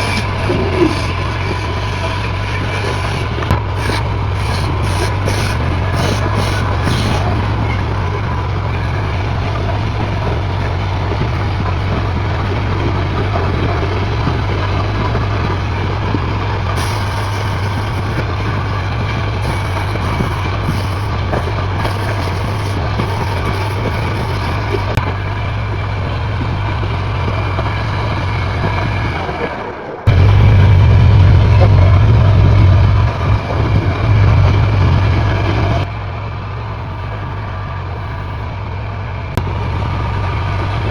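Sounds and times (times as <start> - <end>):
machine humming and rushing: 0.0 - 29.0, 30.1 - 40.9.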